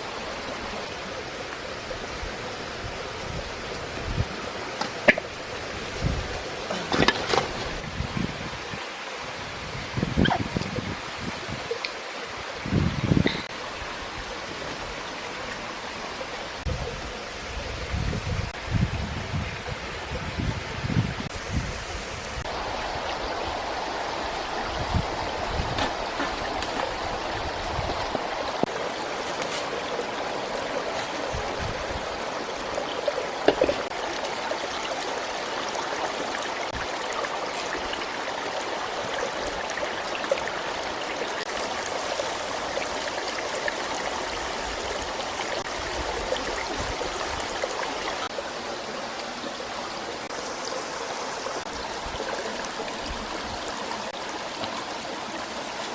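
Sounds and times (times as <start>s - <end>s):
running water rushing: 0.0s - 55.9s.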